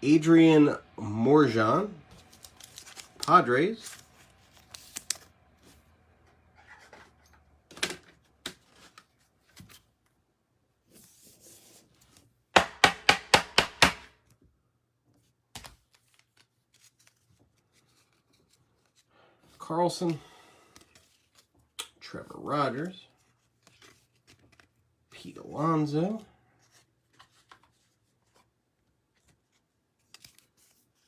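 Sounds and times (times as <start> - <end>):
cards rustling on a table: 1.7 - 10.2, 15.1 - 21.9, 22.8 - 31.0
knock: 12.6 - 14.1.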